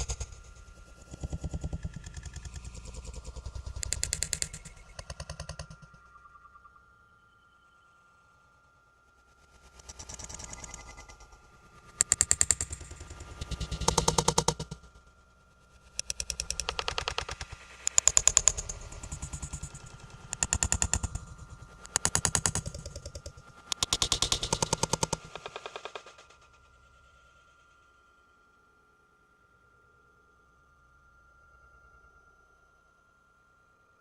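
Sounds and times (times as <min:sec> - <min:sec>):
faint steady high tone: 0:06.0 - 0:09.1.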